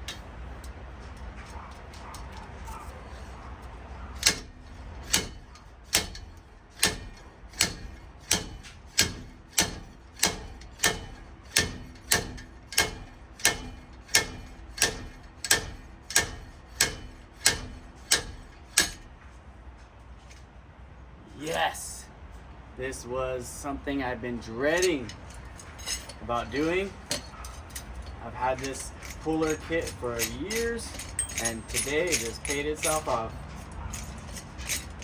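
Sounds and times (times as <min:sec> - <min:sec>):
slide hammer metal clacks: 0:00.0 - 0:19.3, 0:24.7 - 0:35.0.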